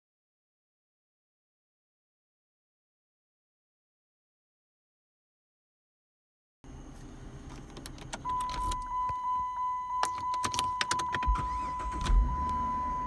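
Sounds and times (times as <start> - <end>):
key clicks and jingling: 7.5 - 9.2, 10.0 - 11.4
high electronic warning tone: 8.2 - 13.0.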